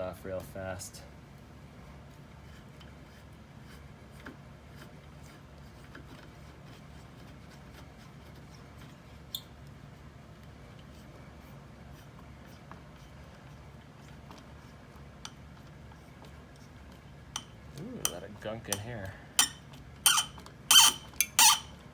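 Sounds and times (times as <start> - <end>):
low steady hum: 0.0 - 21.9
clicks and scrapes of screws: 17.4 - 21.8.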